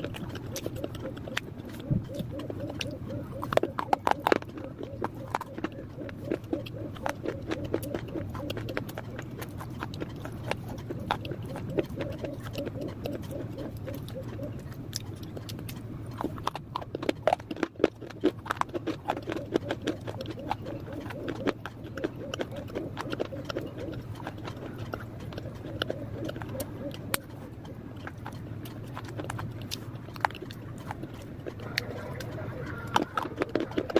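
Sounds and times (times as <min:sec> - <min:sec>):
dry clay being chewed: 0:00.0 - 0:33.9.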